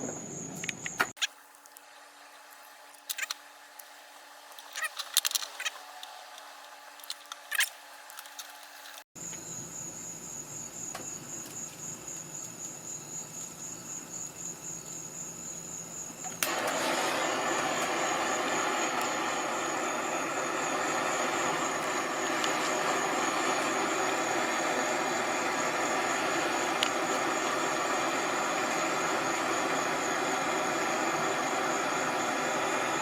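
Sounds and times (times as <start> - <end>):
handling knocks and clicks: 4.6 - 9.0
propane torch hissing: 16.4 - 33.0.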